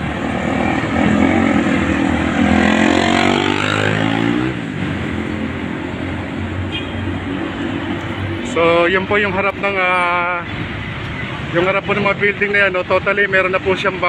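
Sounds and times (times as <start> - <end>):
vehicle engine passing: 0.0 - 10.8
traffic noise: 0.0 - 14.0.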